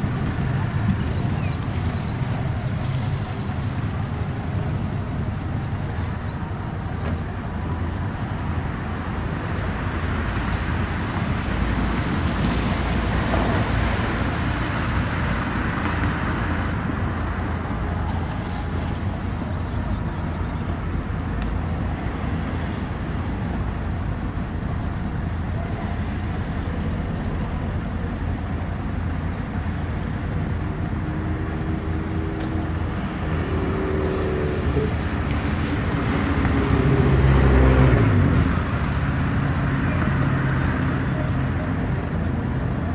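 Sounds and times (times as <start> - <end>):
road noise: 0.0 - 42.9
vehicle engine approaching: 0.0 - 42.9
vehicle passing: 30.0 - 42.9.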